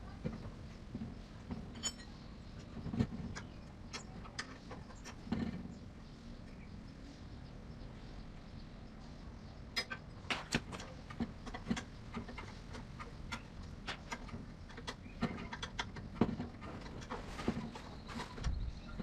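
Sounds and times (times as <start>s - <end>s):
metal tools clicking and knocking: 1.5s - 5.6s, 9.8s - 17.2s.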